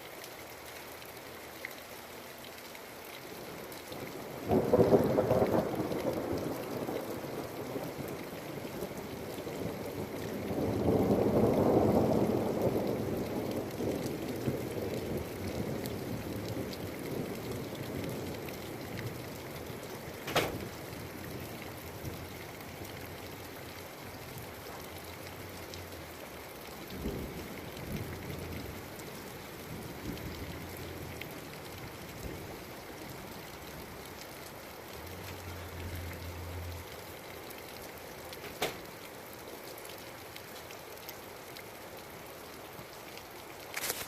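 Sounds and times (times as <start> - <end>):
steady rain falling: 0.0 - 44.0
thunder rumbling: 4.4 - 8.1, 8.8 - 23.1.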